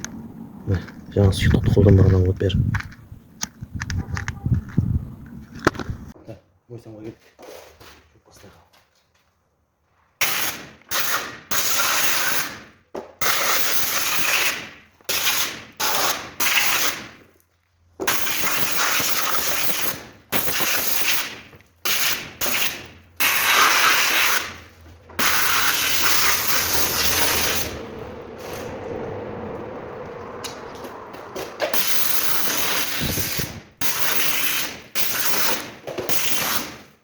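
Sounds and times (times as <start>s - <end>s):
pressure washer spraying water: 18.1s - 24.6s, 25.2s - 28.7s, 31.7s - 36.7s
low hum: 26.3s - 31.6s.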